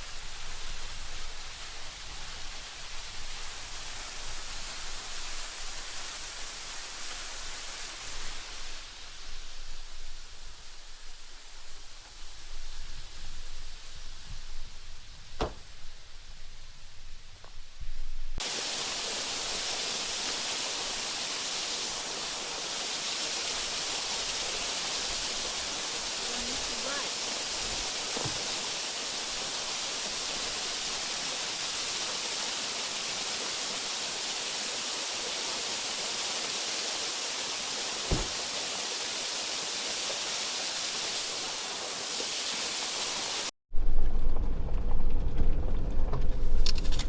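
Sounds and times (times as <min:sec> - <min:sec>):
river rushing: 0:18.4 - 0:36.1.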